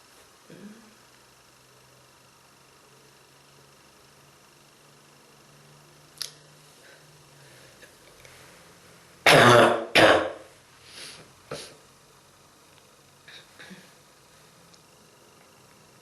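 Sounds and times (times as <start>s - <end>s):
man coughing: 9.3s - 10.4s.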